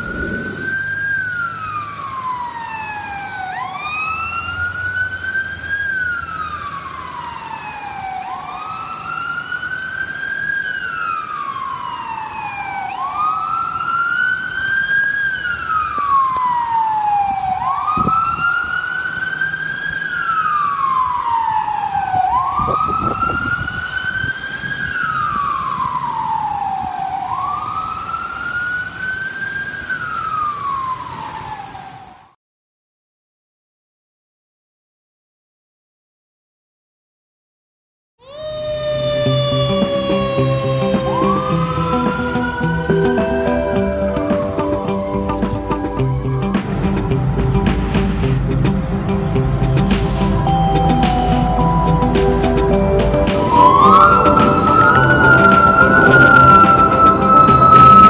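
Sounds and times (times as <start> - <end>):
fire engine siren wailing: 0.0 - 32.3, 38.2 - 58.0
truck engine rumbling: 38.8 - 58.0
low thumps: 44.4 - 58.0.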